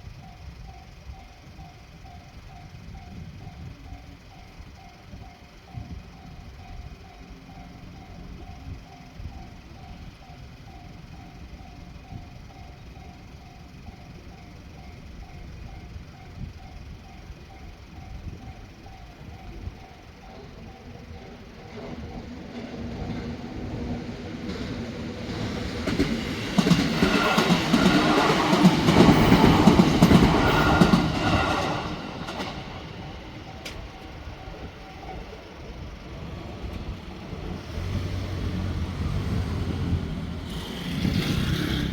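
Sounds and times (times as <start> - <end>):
level crossing warning bell: 0.0 - 40.7
vehicle engine hum: 31.7 - 41.9.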